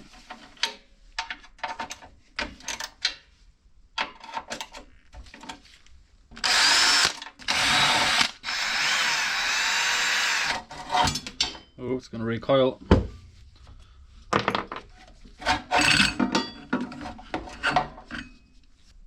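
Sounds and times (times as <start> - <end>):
power drill motor whine: 6.4 - 10.6.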